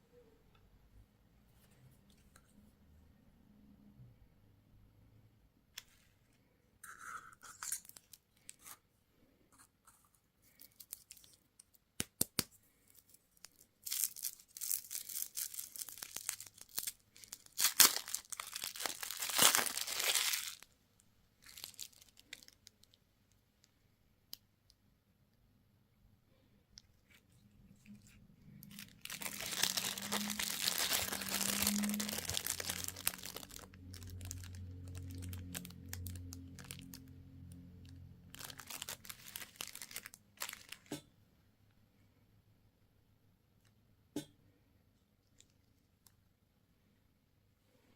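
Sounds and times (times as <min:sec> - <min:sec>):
packaging tearing and crinkling: 0:10.5 - 0:20.6, 0:21.4 - 0:23.0, 0:28.0 - 0:37.1, 0:37.8 - 0:40.9.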